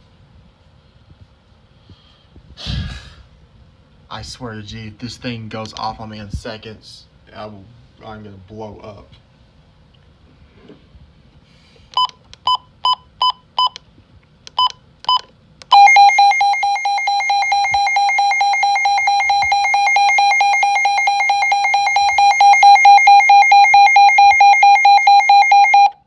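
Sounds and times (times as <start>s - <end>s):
weather radio beeps: 15.7s - 25.9s
pulsing electronic alarm tone: 15.7s - 26.0s.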